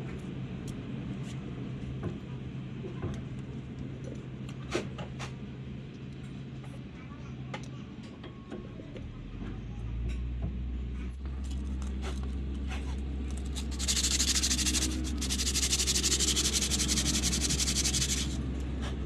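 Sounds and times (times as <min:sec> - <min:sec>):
machine humming: 0:13.4 - 0:18.6
loud rapid rattling hiss: 0:13.5 - 0:18.4.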